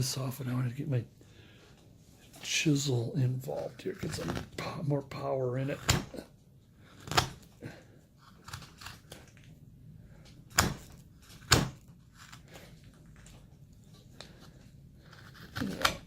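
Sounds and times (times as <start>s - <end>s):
chisel cutting into wood: 5.8s - 6.1s, 15.0s - 16.0s.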